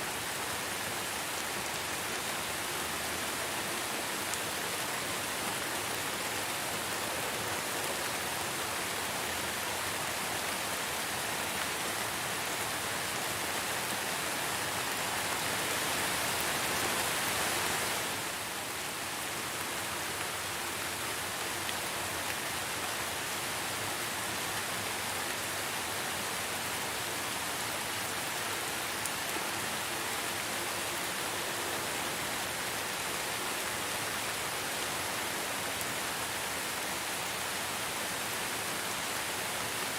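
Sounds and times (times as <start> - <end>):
rain falling on a surface: 0.0 - 39.9.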